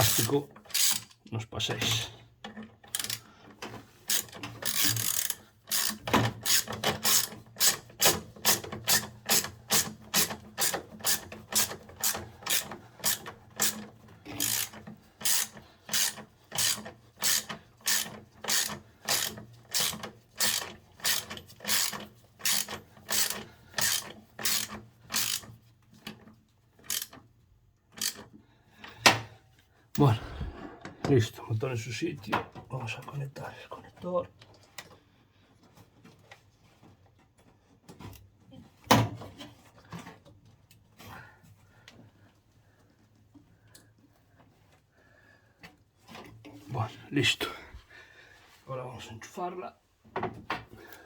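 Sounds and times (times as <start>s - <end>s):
ratchet wrench clicking: 0.0s - 1.2s, 2.9s - 3.2s, 4.1s - 25.5s, 26.9s - 27.2s, 28.0s - 28.2s.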